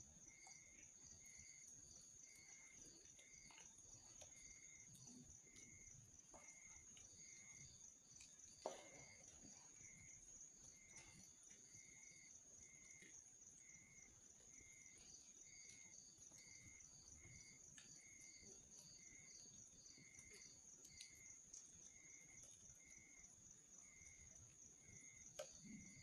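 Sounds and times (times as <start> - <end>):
campfire crackles: 0.0 - 26.0.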